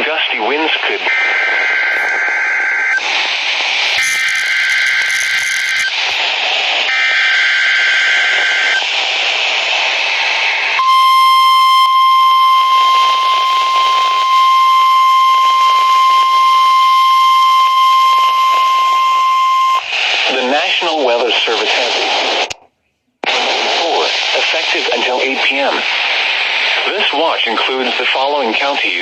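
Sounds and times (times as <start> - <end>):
radio receiver hiss: 0.0 - 22.6, 23.2 - 29.0
steady alarm tone: 1.2 - 6.3, 10.8 - 19.9
screechy digital data bursts: 1.5 - 3.2, 3.8 - 6.3.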